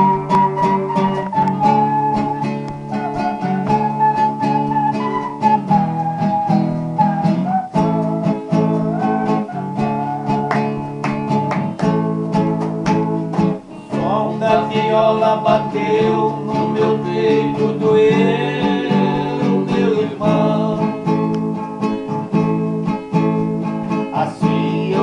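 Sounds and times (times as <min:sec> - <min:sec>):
steel-strung guitar picking: 0:00.0 - 0:13.9.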